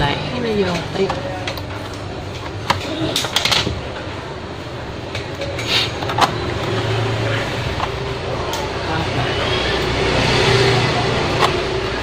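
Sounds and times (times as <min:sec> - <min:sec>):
steady background hum: 0:00.0 - 0:12.0.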